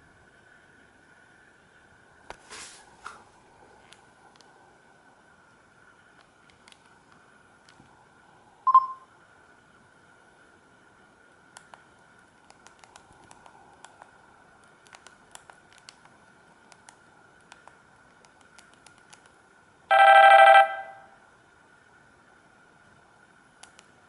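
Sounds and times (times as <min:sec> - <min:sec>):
electronic phone ring tone: 0:08.7 - 0:09.0, 0:19.9 - 0:21.1.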